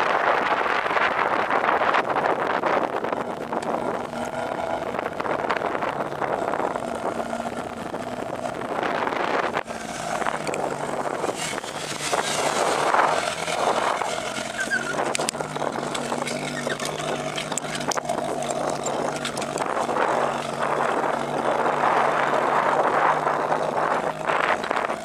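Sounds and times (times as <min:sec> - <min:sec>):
low engine hum: 0:00.0 - 0:25.0
motor vehicle engine running: 0:00.0 - 0:25.0
wind rushing over microphone: 0:00.0 - 0:25.0.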